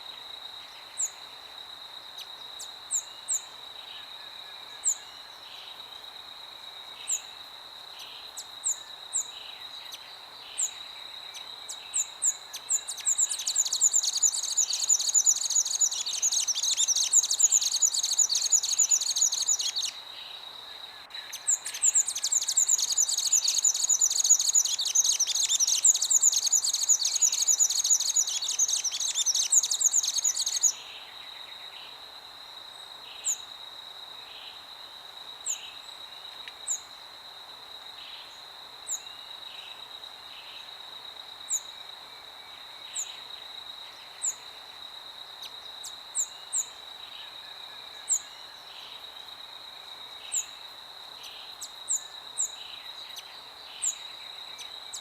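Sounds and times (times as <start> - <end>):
soft wind hiss: 0.0 - 55.0
songbirds chattering: 12.0 - 20.0, 21.3 - 30.8
high insect-like tone: 12.8 - 20.0, 21.7 - 30.8.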